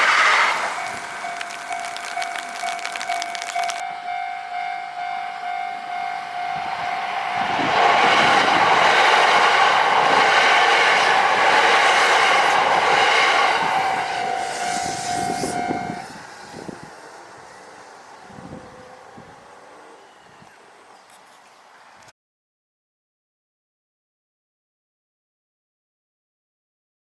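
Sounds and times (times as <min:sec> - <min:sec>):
train rushing past: 0:03.8 - 0:20.4.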